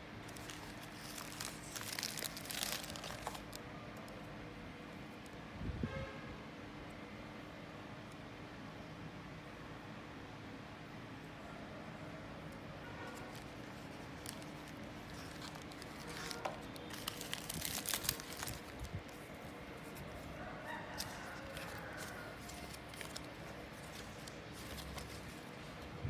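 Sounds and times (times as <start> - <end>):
faint handling noises: 0.0 - 4.2, 13.0 - 26.0.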